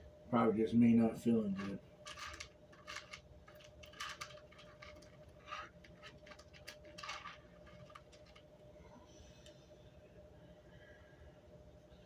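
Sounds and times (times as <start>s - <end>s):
faint steady hum: 0.0s - 12.0s
small plastic parts clicking: 1.6s - 8.5s.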